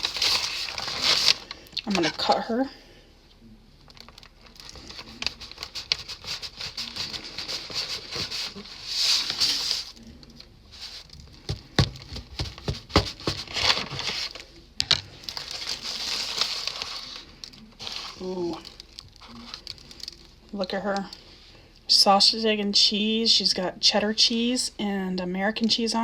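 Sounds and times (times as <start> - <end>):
paper wrapper rustling: 0.0 - 2.4, 3.8 - 20.3.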